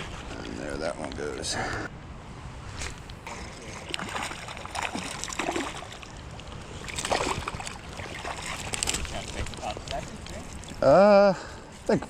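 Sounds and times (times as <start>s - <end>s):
small splashes and clicks: 2.9s - 10.9s
creek water running and splashing: 3.2s - 11.6s.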